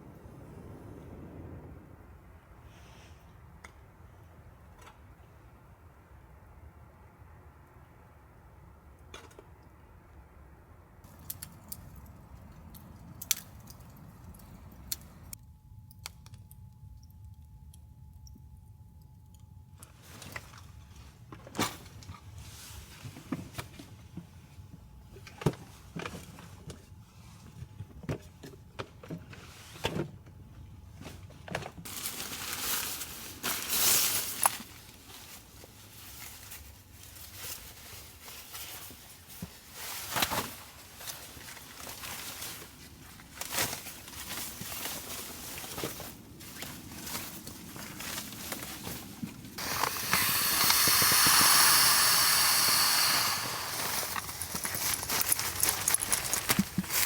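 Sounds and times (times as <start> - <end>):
hissing rush: 49.6 - 55.1.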